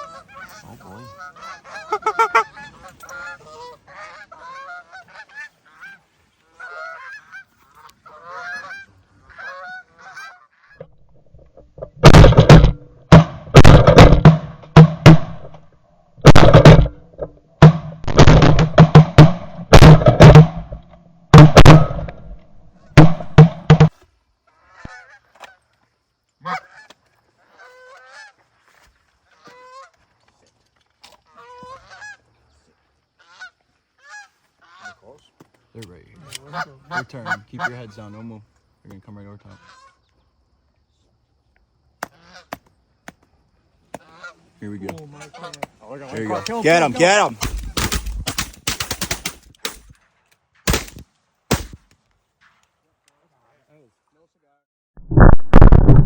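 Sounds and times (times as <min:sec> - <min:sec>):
geese honking: 0:00.0 - 0:11.0, 0:22.8 - 0:25.8, 0:26.4 - 0:30.0, 0:31.2 - 0:32.3, 0:33.1 - 0:35.2, 0:36.1 - 0:38.4, 0:39.4 - 0:40.1, 0:42.0 - 0:42.6, 0:43.9 - 0:47.8.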